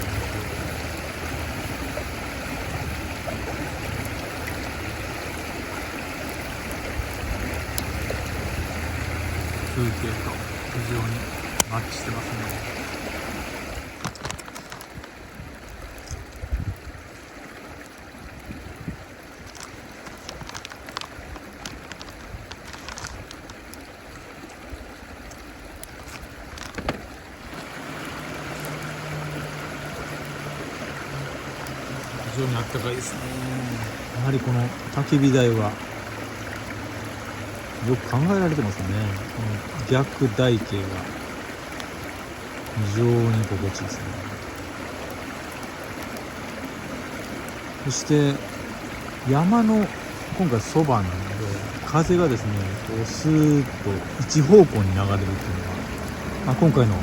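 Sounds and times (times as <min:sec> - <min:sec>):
wood fire crackling and popping: 0:00.0 - 0:16.4, 0:19.4 - 0:23.9
fire crackles: 0:00.0 - 0:57.0
wood fire burning: 0:00.0 - 0:57.0.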